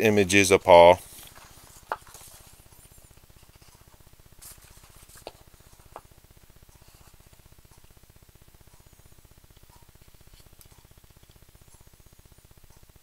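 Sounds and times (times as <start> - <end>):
low steady hum: 0.0 - 13.0
paper clicks and rustles: 0.9 - 6.1.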